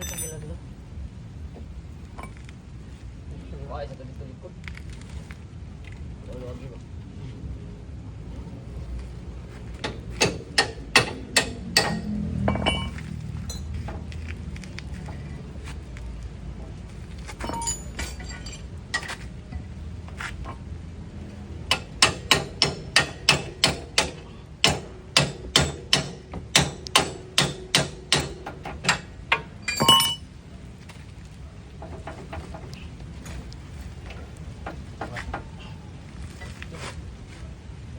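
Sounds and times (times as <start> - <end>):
hammer striking metal: 0.0 - 0.5, 9.8 - 13.7, 17.4 - 18.5, 21.7 - 30.3.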